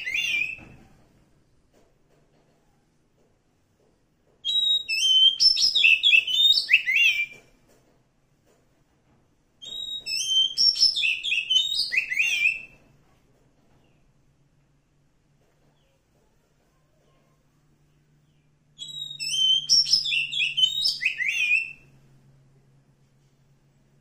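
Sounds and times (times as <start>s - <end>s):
bird singing whistled notes: 0.0s - 0.8s, 4.4s - 7.4s, 9.6s - 12.8s, 18.4s - 21.9s.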